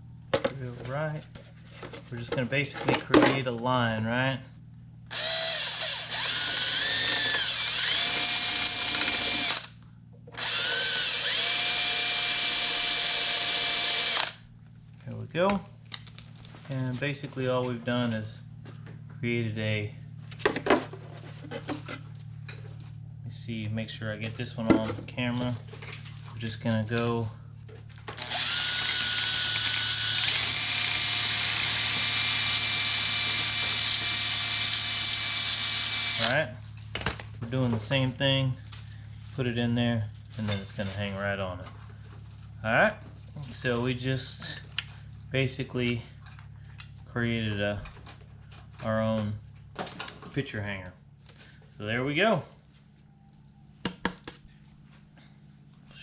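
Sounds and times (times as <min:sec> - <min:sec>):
electric drill cutting wood: 0:05.1 - 0:09.8, 0:10.4 - 0:14.4, 0:28.1 - 0:36.4.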